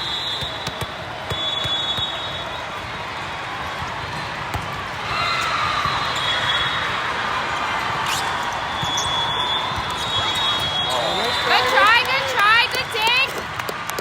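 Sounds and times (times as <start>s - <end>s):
volleyball hits: 0.4s - 14.0s
spectator noise: 5.1s - 14.0s.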